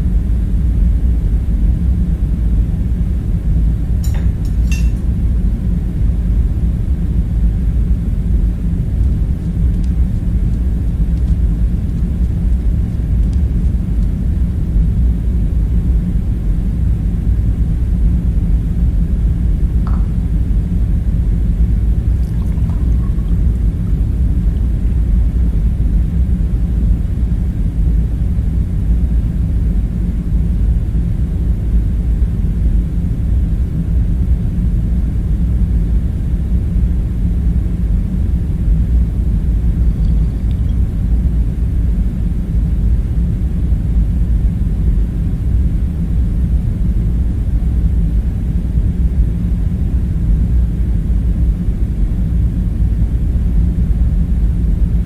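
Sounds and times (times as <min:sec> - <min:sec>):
deep machinery hum: 0:00.0 - 0:55.0
faint clinks: 0:04.0 - 0:05.0.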